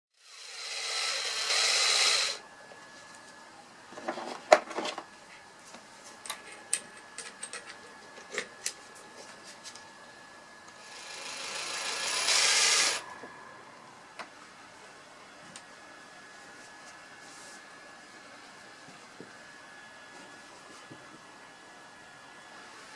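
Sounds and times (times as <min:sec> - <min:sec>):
power tool whirring: 0:00.2 - 0:02.4, 0:10.7 - 0:13.2.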